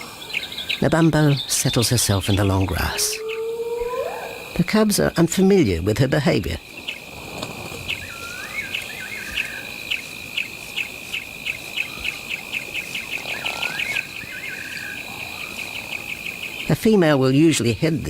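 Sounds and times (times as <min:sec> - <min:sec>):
high insect drone: 0:00.0 - 0:18.0
bird swooping whistle and trill: 0:07.9 - 0:09.6.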